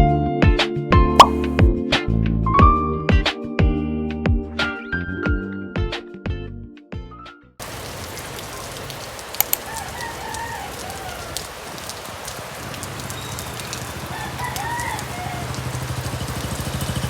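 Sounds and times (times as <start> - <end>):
background music: 0.0 - 7.6
rain hissing: 7.6 - 17.0
rooster crowing: 9.4 - 16.2.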